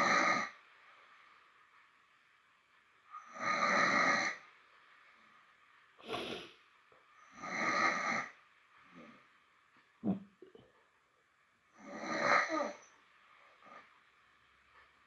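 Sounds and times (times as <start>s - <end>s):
man snoring heavily: 3.3s - 4.4s, 7.4s - 8.3s, 11.8s - 12.8s
sharp breath: 6.0s - 6.6s.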